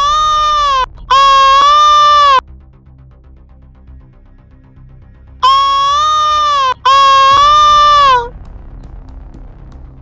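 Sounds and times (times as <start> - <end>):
quiet music with ticking beat: 8.3 - 10.0.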